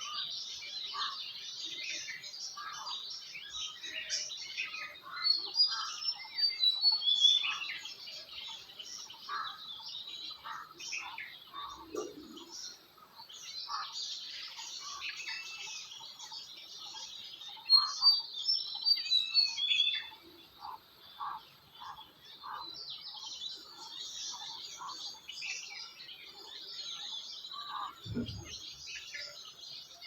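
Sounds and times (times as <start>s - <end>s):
birds chirping and singing: 0.0s - 30.0s
short low bird calls: 27.5s - 29.3s.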